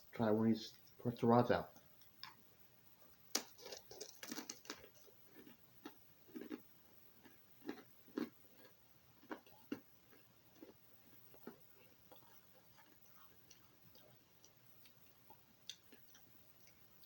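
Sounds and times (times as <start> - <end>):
crunching hard pretzel: 3.3 - 13.6.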